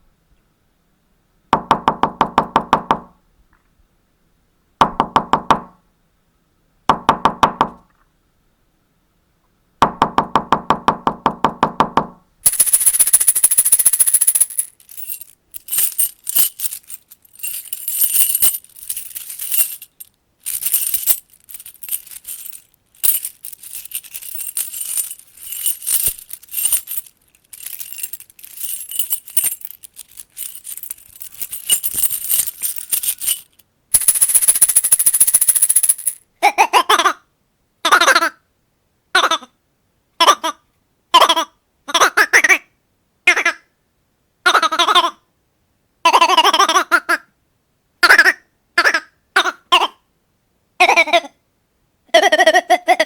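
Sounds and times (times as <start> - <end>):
knocking on door: 1.6 - 3.2, 4.8 - 5.8, 6.9 - 7.8, 9.8 - 12.2
keys jingling: 12.5 - 36.2.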